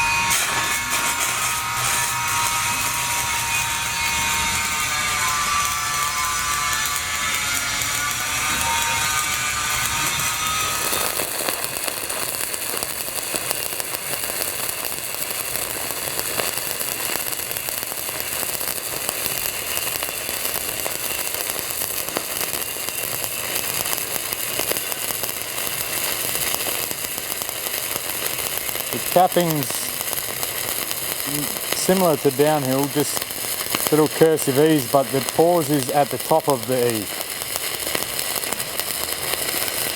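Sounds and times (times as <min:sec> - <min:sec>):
wavering whine: 0:00.0 - 0:11.8
welding arc crackling: 0:00.0 - 0:39.9.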